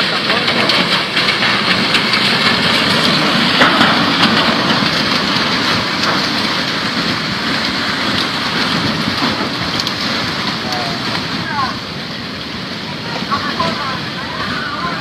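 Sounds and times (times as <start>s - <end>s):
floodwater roaring: 0.0s - 15.0s
faint ticks and knocks: 0.1s - 11.3s.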